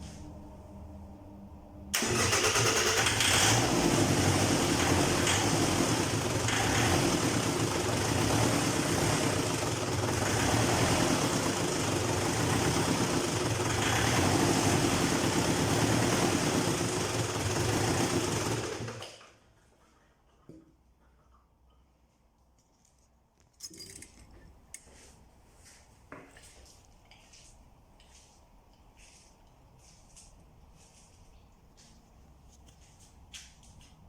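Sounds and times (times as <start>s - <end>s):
diesel engine starting and idling: 0.0s - 19.6s.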